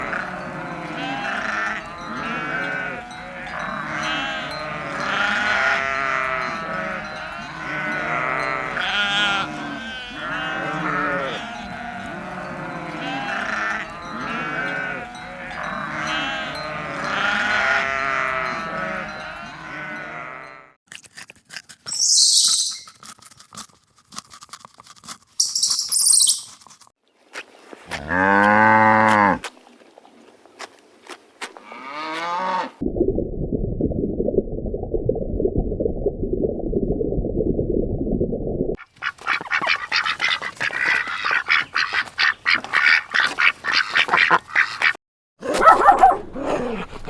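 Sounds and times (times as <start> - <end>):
sheep bleating: 0.0 - 20.8.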